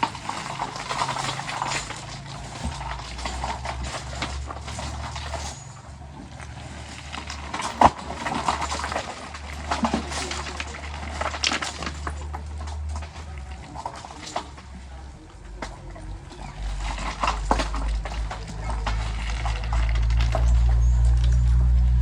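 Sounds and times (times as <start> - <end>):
metallic knocks and clanks: 0.0 - 14.8
diesel engine running: 0.0 - 22.0.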